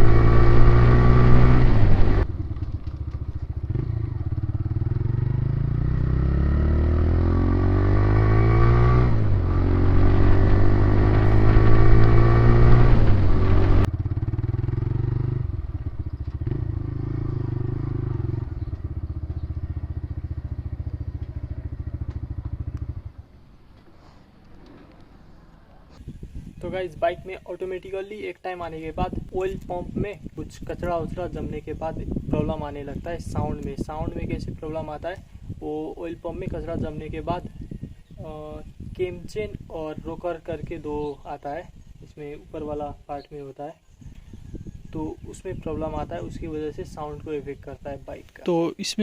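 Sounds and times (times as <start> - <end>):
motorcycle engine revving: 0.0 - 25.7.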